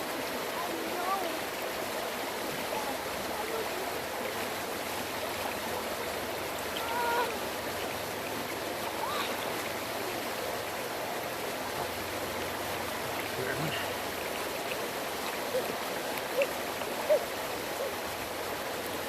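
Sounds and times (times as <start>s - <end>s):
water rushing over rocks: 0.0s - 19.0s.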